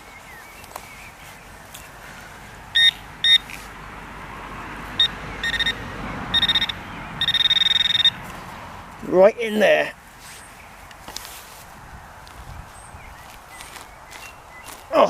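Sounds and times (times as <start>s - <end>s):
metal detector beeping: 2.8s - 3.5s, 5.0s - 8.2s.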